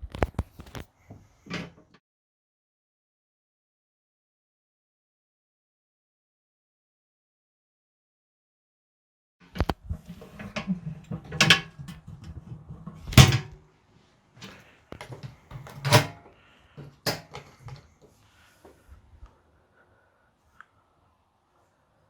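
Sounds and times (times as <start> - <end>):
objects knocking and clunking: 9.4 - 13.7, 14.4 - 18.2.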